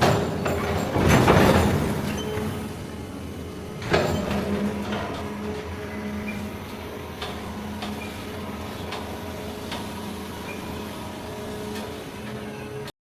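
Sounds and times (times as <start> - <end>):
metal baler humming: 0.0 - 12.9.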